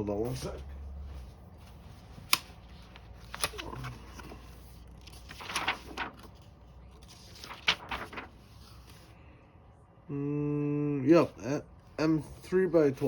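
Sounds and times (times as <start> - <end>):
handling rustle: 1.1 - 6.4.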